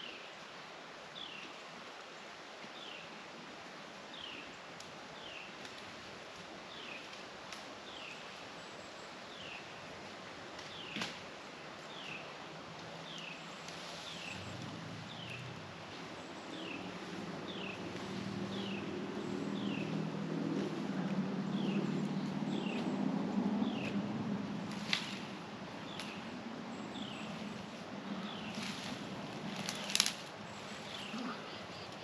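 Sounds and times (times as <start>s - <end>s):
low engine hum: 11.8s - 32.0s.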